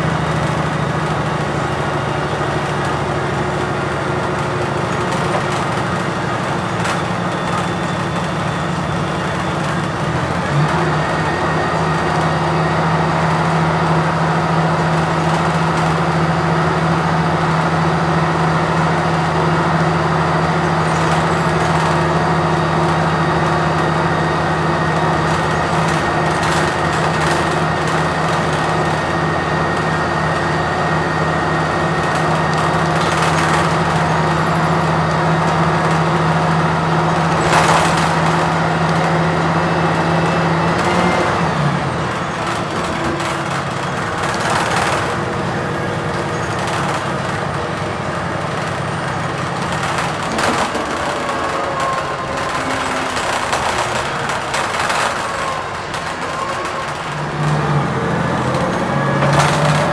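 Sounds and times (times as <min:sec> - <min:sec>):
bus engine running: 0:00.0 - 0:59.9
road noise: 0:00.0 - 0:59.9
rattles: 0:31.3 - 0:41.1, 0:42.1 - 0:59.9.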